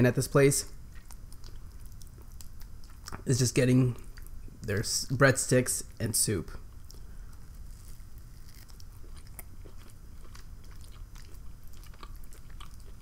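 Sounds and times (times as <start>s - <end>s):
person chewing food: 0.8s - 3.3s, 6.7s - 13.0s.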